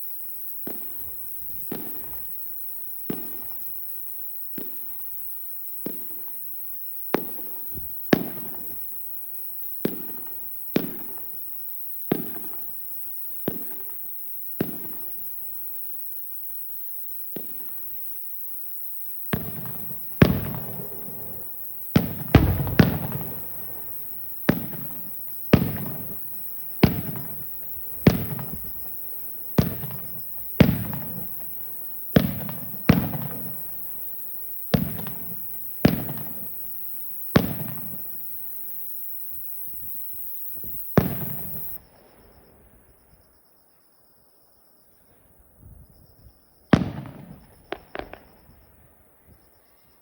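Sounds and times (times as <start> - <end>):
distant fireworks booming: 7.2 - 9.0, 19.3 - 38.4, 39.7 - 43.4, 45.5 - 49.6.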